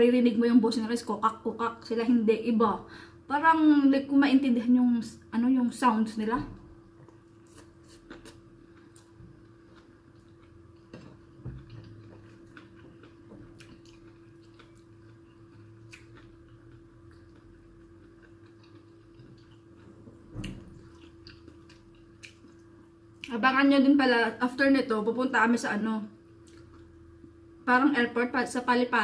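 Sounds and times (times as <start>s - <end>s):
faint steady hum: 0.0s - 29.0s
faint chewing: 6.9s - 23.4s, 26.2s - 27.4s.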